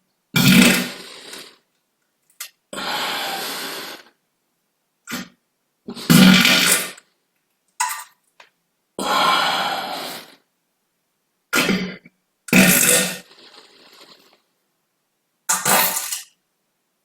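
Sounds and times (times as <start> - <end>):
farts: 0.4 - 1.6, 5.1 - 7.1, 11.6 - 14.4, 15.5 - 16.3.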